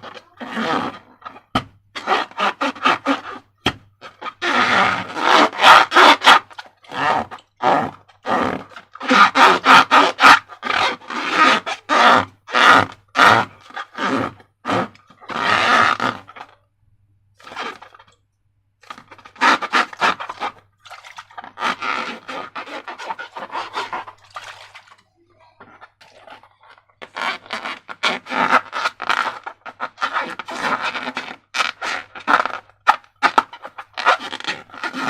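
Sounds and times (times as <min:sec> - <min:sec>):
slime squelching: 0:18.8 - 0:27.9.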